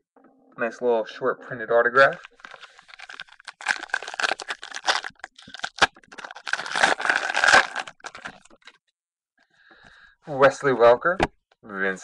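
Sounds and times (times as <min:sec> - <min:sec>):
trading cards rustling and clicking: 0:02.2 - 0:08.8.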